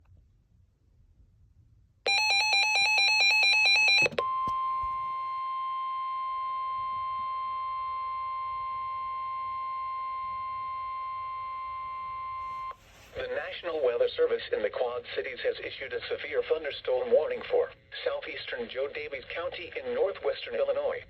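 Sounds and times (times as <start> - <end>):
steady single-pitch alarm tone: 2.1 - 12.8.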